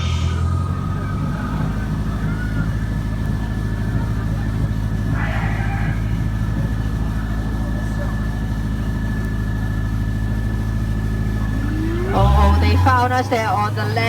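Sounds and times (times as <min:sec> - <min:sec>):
brief burst of noise: 0:00.0 - 0:01.3
boat motor humming: 0:00.0 - 0:14.0
faint steady whine: 0:00.0 - 0:14.0.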